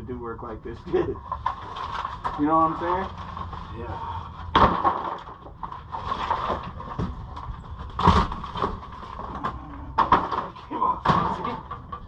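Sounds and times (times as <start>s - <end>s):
wood knocks and crunches: 4.3s - 12.0s.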